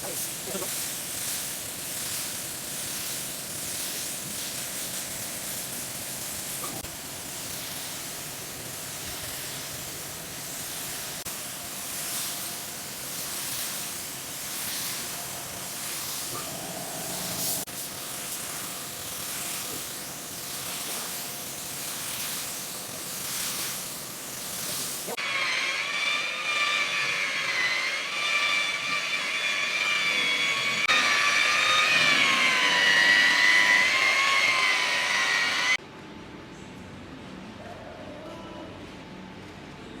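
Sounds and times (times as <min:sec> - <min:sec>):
spray gun hissing: 0:00.0 - 0:25.2.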